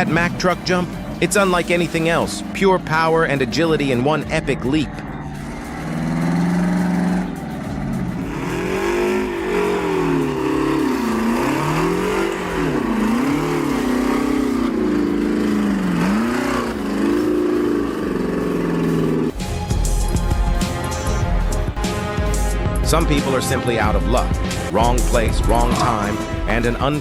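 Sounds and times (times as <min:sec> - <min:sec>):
vehicle engine revving: 0:00.0 - 0:27.0.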